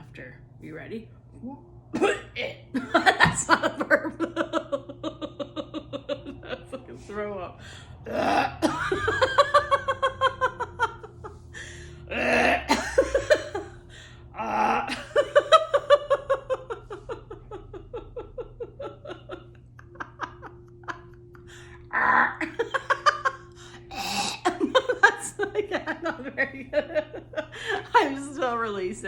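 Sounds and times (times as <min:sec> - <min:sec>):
woman belching: 0:02.0 - 0:03.6, 0:08.1 - 0:09.5, 0:12.1 - 0:13.6, 0:14.4 - 0:15.2, 0:21.8 - 0:23.0, 0:23.7 - 0:25.1
woman laughing: 0:02.0 - 0:29.0.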